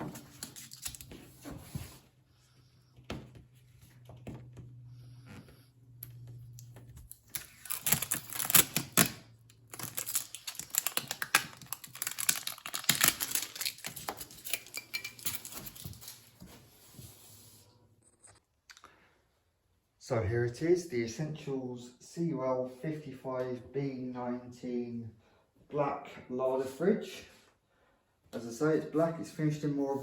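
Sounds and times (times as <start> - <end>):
packaging crackling and clicking: 0.1 - 1.2, 6.6 - 16.2.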